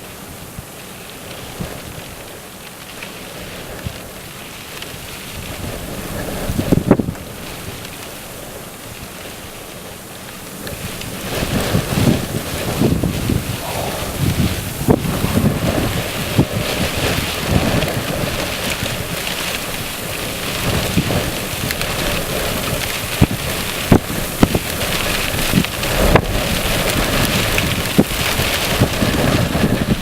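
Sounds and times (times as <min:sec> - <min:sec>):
hailstones cracking on hard surfaces: 0:00.0 - 0:13.5, 0:14.3 - 0:30.0
hail and heavy rain: 0:00.0 - 0:30.0
wind buffeting microphone: 0:04.9 - 0:09.3, 0:10.5 - 0:30.0.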